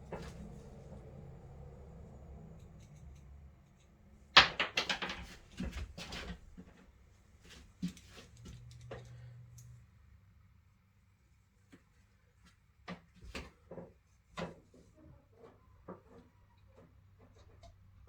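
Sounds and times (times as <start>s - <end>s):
faint low hum: 0.0s - 4.4s, 5.2s - 12.8s
hard objects knocking together: 4.4s - 5.8s.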